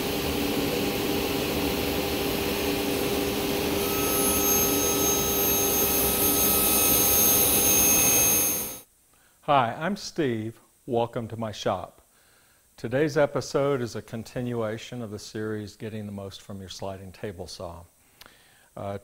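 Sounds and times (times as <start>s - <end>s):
higher machine whine: 0.0s - 8.8s
woodworking machinery whirring: 0.0s - 8.8s.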